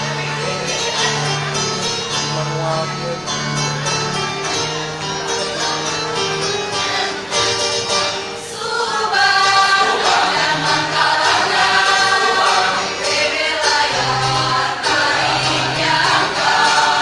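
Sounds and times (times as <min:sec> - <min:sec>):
choir singing in harmony: 0:08.1 - 0:17.0.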